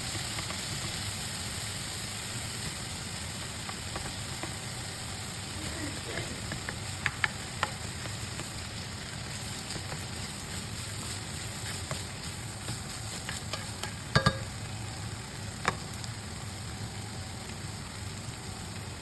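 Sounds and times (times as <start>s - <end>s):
meat sizzling in a pan: 0.0s - 19.0s
utensil knocking against pan: 13.2s - 14.6s.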